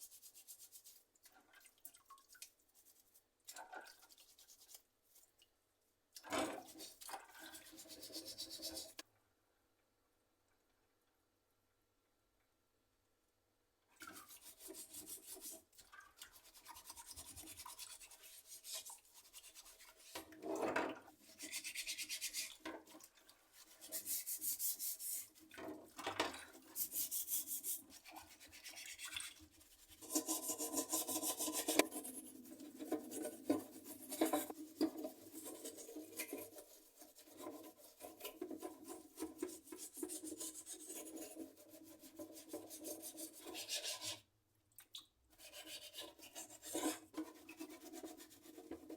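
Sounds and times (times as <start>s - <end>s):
brush scrubbing plastic parts: 6.4s - 9.0s, 14.1s - 20.4s, 21.1s - 44.2s, 45.4s - 48.9s.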